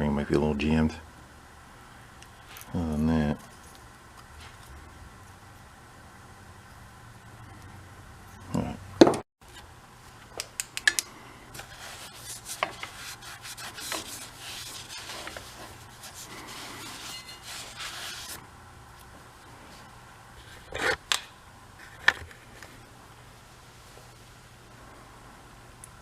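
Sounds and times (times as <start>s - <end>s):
rubbing and scraping of metal parts: 11.5s - 18.4s.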